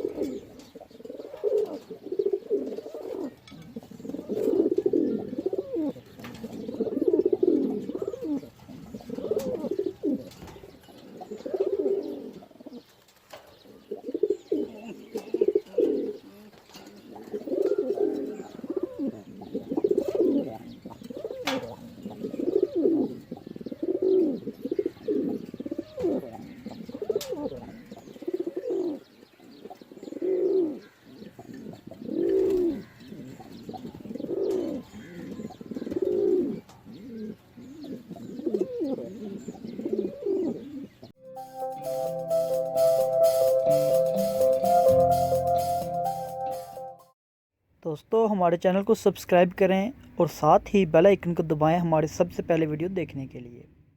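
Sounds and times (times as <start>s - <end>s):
pigeons cooing: 0.0s - 41.1s.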